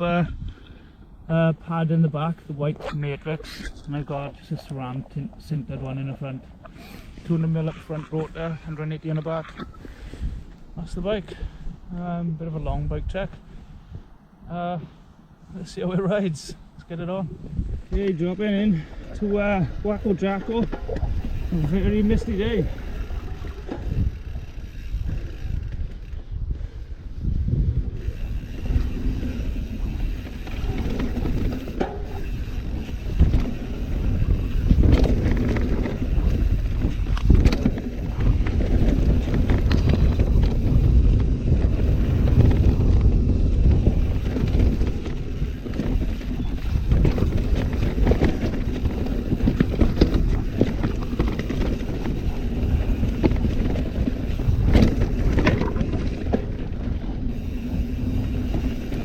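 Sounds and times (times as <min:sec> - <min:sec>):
wind on microphone: 0:16.6 - 0:59.0
bike knocking and rattling: 0:17.3 - 0:26.8, 0:27.5 - 0:59.0
tyres rumbling over dirt and rocks: 0:28.3 - 0:59.0.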